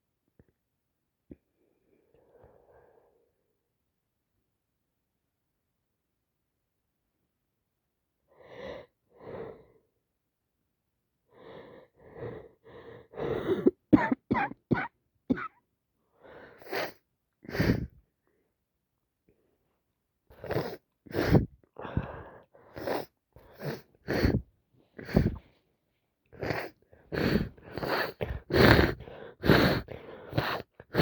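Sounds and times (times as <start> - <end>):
person coughing and sneezing: 13.5 - 15.6
soft breaths: 19.3 - 31.0.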